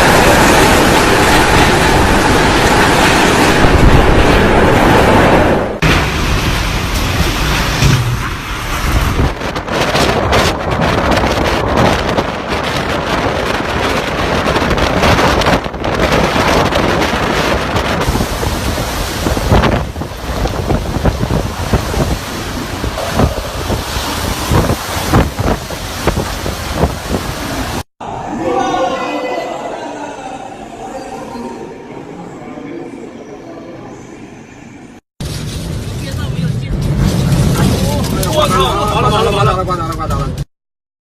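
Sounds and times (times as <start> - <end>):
strong wind buffeting microphone: 0.0 - 27.9.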